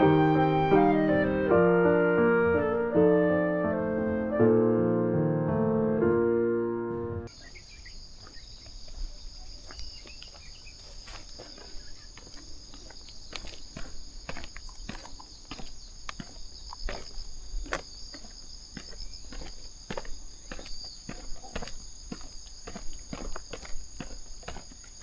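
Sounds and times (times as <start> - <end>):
piano music: 0.0 - 7.3
high-pitched insect chorus: 7.3 - 25.0.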